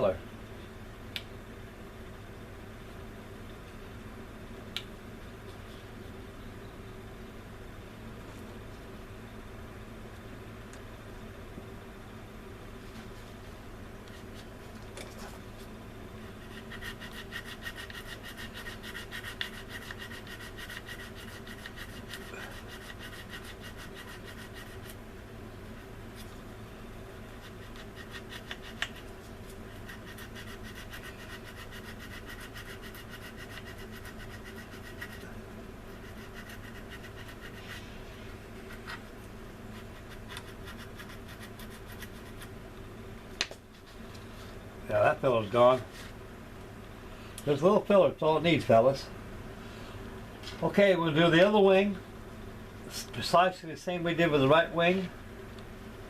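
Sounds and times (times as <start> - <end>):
steady low hum: 0.0 - 56.0
sanding stick scraping plastic: 16.4 - 25.0, 27.4 - 29.1, 29.8 - 35.2, 35.9 - 38.0, 39.7 - 42.5.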